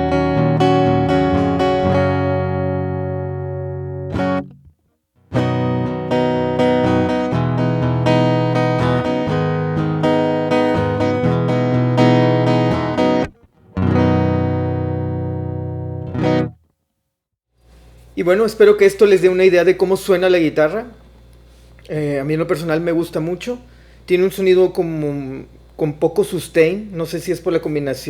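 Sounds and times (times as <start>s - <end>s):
acoustic guitar strumming: 0.0s - 4.7s, 5.3s - 16.6s.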